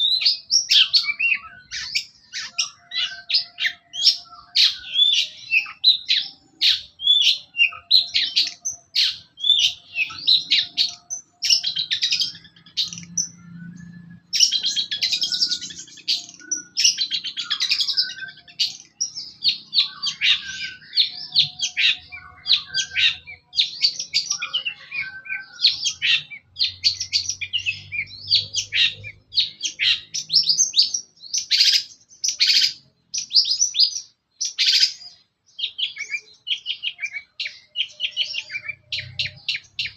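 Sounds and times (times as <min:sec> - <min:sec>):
shrike singing chirps and trills: 0:00.0 - 0:39.9.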